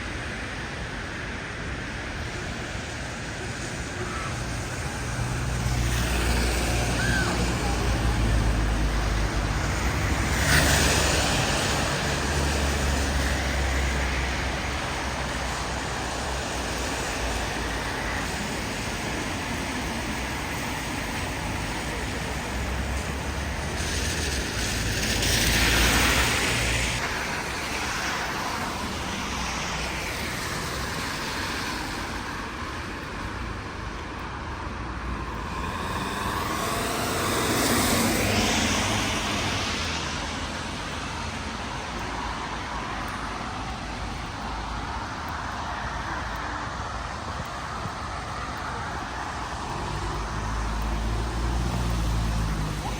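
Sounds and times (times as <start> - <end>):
city street traffic: 0.0 - 52.9
vehicle passing: 34.8 - 41.4, 46.0 - 52.9
vehicle passing loudly: 35.0 - 41.1.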